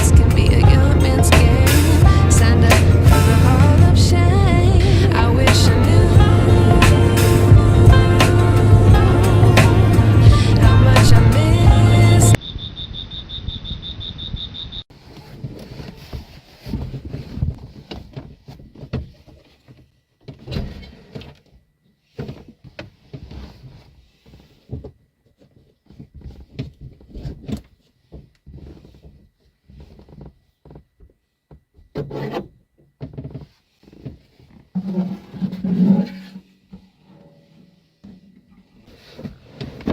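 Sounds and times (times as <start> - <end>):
objects rubbing and scraping: 15.0 - 17.9, 33.7 - 39.9.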